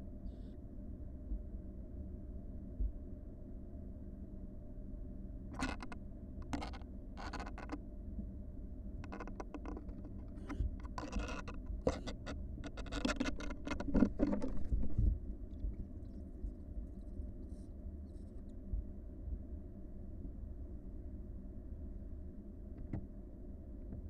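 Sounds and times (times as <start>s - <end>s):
owl nestlings scratching: 9.1s - 15.0s.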